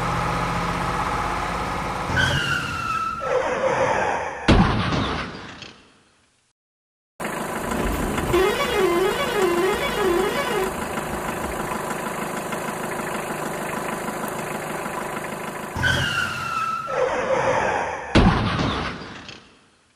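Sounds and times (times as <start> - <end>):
vehicle engine running: 0.0 - 3.3, 7.2 - 17.0.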